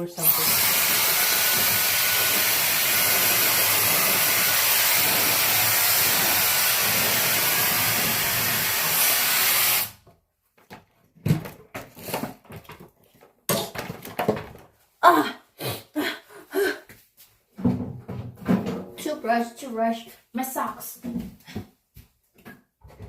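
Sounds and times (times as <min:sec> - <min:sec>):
hair dryer blowing: 0:00.2 - 0:10.0.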